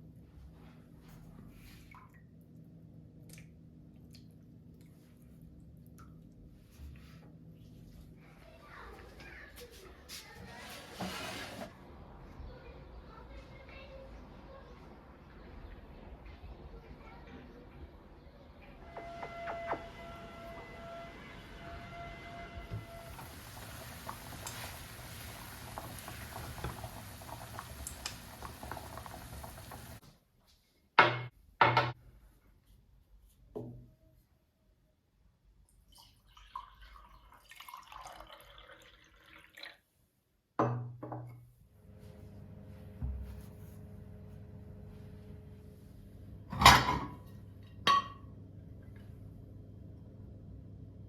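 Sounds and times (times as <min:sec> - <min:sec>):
appliance hum: 0:13.9 - 0:30.0, 0:41.7 - 0:51.0
liquid pouring: 0:22.8 - 0:30.0, 0:35.8 - 0:39.9
dishes and utensils clinking: 0:46.5 - 0:48.3.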